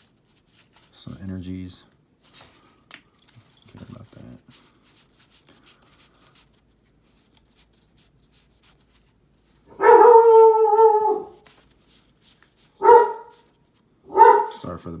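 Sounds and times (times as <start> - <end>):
dog barking: 9.7 - 11.4, 12.8 - 13.4, 14.1 - 14.7
dog howling: 9.7 - 11.4, 12.8 - 13.3, 14.1 - 14.6.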